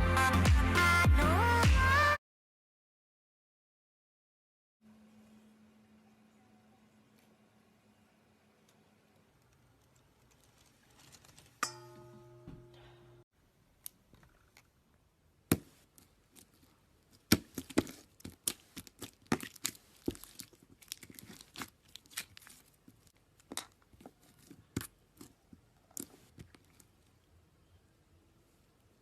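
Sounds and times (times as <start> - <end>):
slime squished by hand: 17.2 - 23.8.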